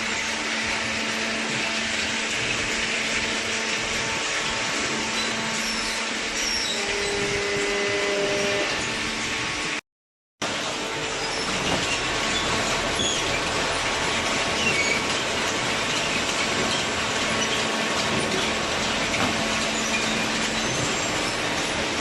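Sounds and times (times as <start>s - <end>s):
hydraulic baler running: 0.0s - 9.8s, 10.4s - 22.0s
short high squeaks: 5.1s - 9.0s.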